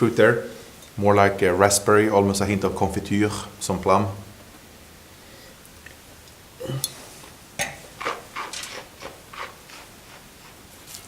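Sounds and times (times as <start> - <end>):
slurping wine: 6.6 - 11.0.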